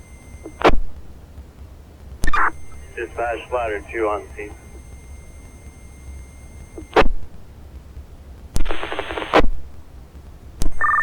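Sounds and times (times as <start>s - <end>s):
radio hissing and humming: 0.0s - 1.1s, 2.1s - 7.5s, 8.6s - 9.6s
garbled radio transmission: 2.2s - 7.0s.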